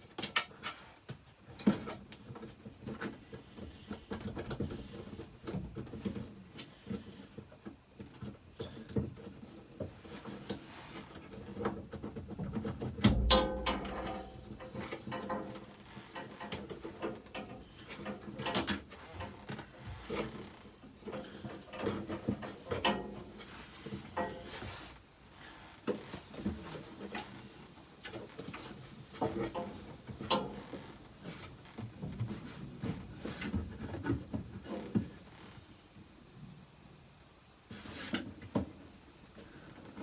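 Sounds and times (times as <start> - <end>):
tools clicking and knocking on metal: 11.6 - 19.6, 21.1 - 24.6, 28.5 - 30.9.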